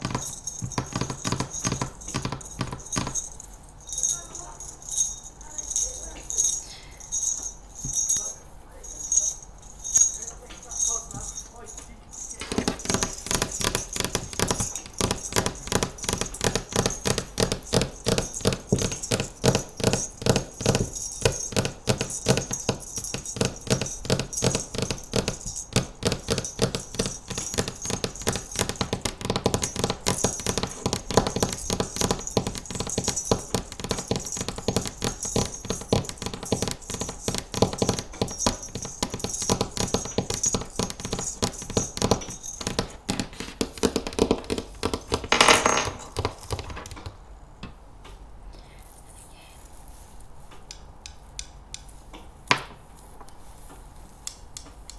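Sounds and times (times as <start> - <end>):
fingernails tapping on hard objects: 0.0 - 5.0, 12.1 - 47.8, 50.5 - 53.4
bright clinking jingling: 0.0 - 47.1.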